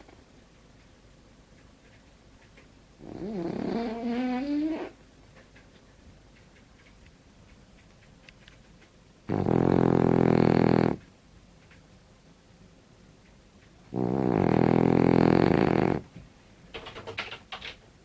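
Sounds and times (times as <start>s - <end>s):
dog snoring: 3.0s - 5.0s, 9.3s - 11.1s, 13.9s - 16.1s.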